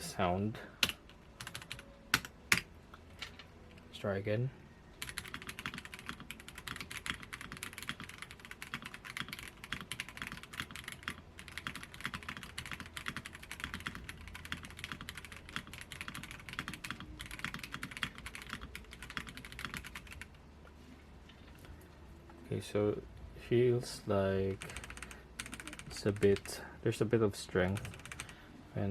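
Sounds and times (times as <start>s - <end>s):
typing on mechanical keyboard: 0.8s - 2.6s, 5.0s - 20.4s, 24.6s - 26.5s, 27.7s - 28.3s.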